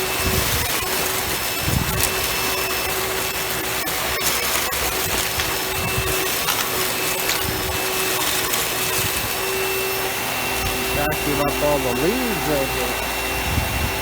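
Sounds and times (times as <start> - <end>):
vacuum bumping over leaves: 0.0 - 13.4
vacuum cleaner running: 0.0 - 14.0.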